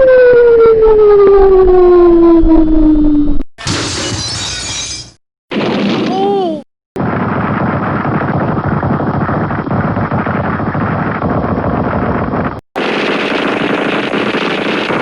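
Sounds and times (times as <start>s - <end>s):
dense gunfire: 5.5s - 6.3s, 7.0s - 15.0s
automatic gunfire: 12.8s - 15.0s.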